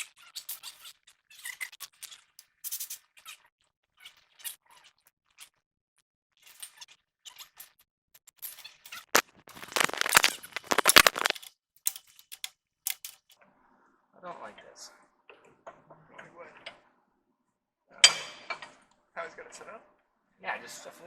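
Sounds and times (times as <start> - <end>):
metal parts scraping: 9.6 - 11.4.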